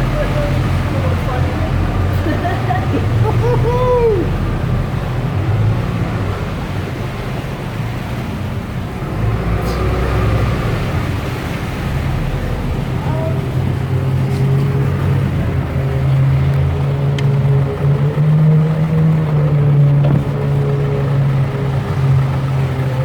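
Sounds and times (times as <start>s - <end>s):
boat engine droning: 0.0s - 23.0s
water and wind noise: 0.0s - 23.0s.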